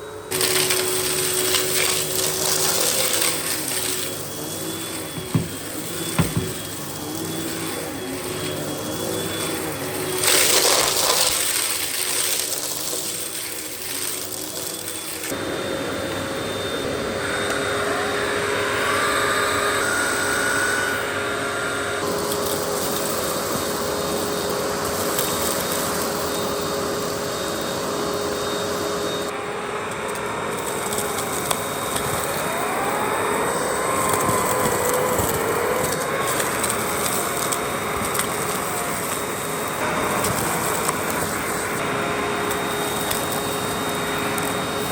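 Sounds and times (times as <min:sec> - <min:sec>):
vacuum cleaner running: 0:00.0 - 0:44.9.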